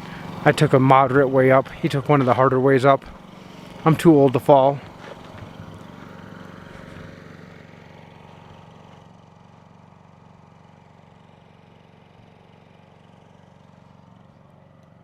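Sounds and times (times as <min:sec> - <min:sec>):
generator engine humming: 0:00.0 - 0:15.0.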